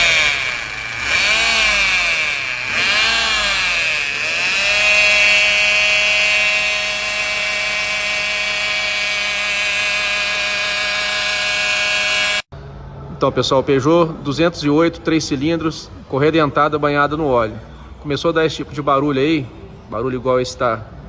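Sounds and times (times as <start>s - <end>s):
car engine whining: 0.0s - 12.5s.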